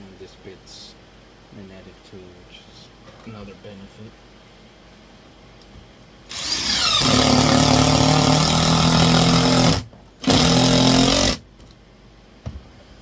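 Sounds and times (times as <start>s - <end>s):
power drill whining: 6.3s - 11.4s.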